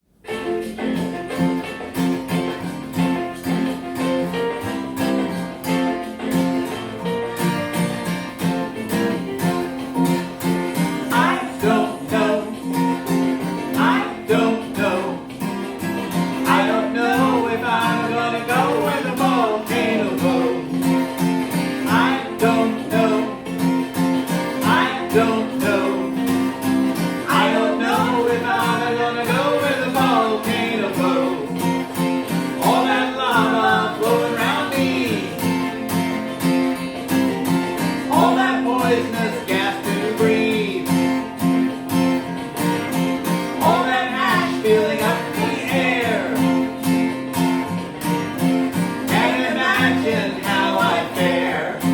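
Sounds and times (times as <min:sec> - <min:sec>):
plucked-string accompaniment: 0:00.2 - 0:51.9
person singing: 0:11.0 - 0:21.1, 0:21.8 - 0:23.9, 0:24.5 - 0:31.8, 0:32.5 - 0:35.8, 0:38.1 - 0:41.3, 0:43.6 - 0:46.8, 0:49.1 - 0:51.9.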